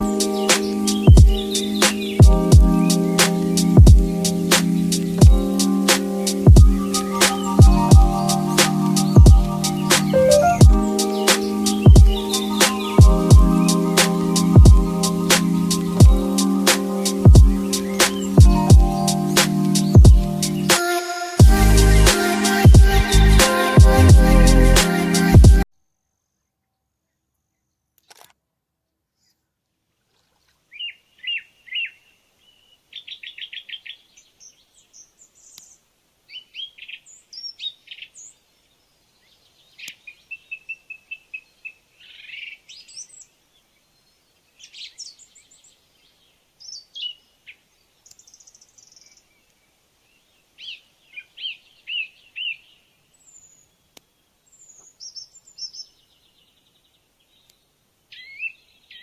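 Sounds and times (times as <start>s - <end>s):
songbirds chirping and trilling: 0.0s - 25.6s, 30.2s - 59.0s
single click: 28.0s - 28.4s.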